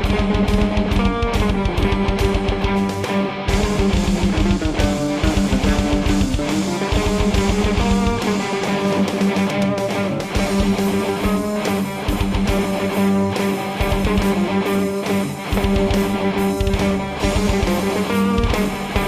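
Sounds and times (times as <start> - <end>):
drum strokes: 0.0 - 19.0
electric guitar rock jam: 0.0 - 19.0.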